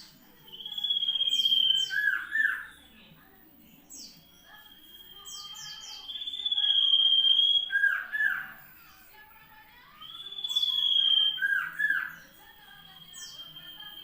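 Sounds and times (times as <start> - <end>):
bird singing high whistles: 0.5 - 2.8, 4.1 - 8.6, 10.0 - 12.2.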